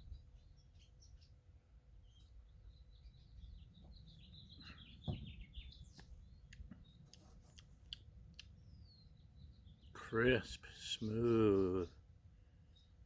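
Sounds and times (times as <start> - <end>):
birds chirping: 0.0 - 12.0
soft thump: 5.1 - 5.4.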